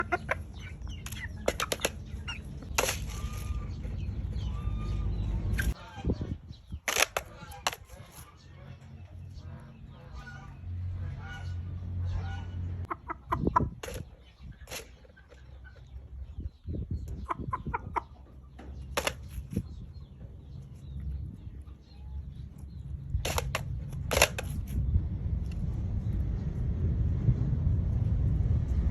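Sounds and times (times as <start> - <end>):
chickens clucking: 0.0 - 25.6
low rumble: 2.1 - 6.7, 23.8 - 28.9.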